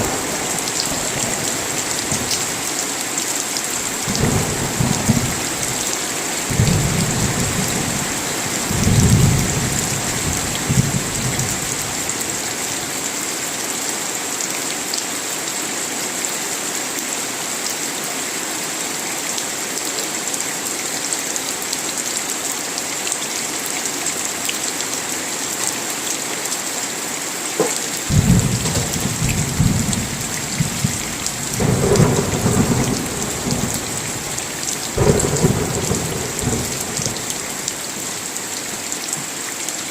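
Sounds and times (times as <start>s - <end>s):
thunder rumbling: 0.0s - 3.0s, 3.8s - 12.4s, 28.1s - 38.4s
steady rain: 0.0s - 39.9s.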